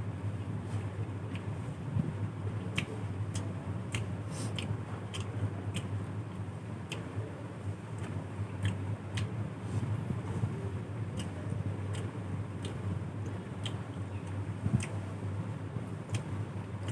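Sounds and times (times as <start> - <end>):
steady low hum: 0.0 - 16.9
person chewing food: 2.7 - 6.0, 8.0 - 10.0, 11.1 - 15.0, 16.1 - 16.9
wet mouth clicks and smacks: 2.7 - 6.0.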